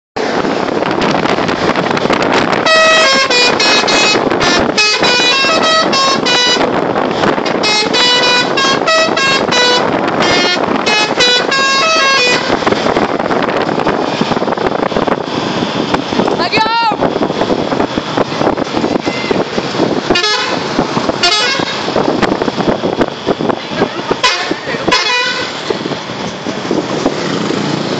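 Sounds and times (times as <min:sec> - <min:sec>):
steady rushing noise: 0:00.2 - 0:27.9
musical air horn tune: 0:02.6 - 0:06.8, 0:07.5 - 0:12.6, 0:20.1 - 0:21.9, 0:24.2 - 0:25.6.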